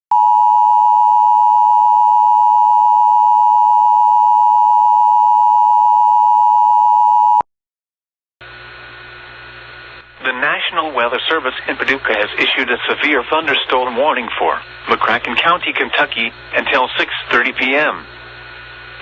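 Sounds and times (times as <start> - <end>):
faint radio hiss: 10.2 - 18.2.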